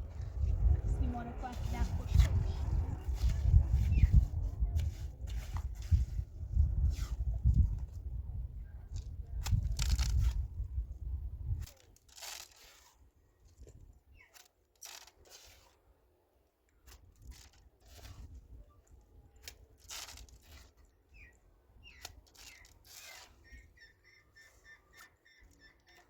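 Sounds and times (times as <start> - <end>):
low rumble: 0.0 - 8.7
faint scrapes and rustles: 0.0 - 10.7, 11.5 - 16.0, 16.8 - 23.8.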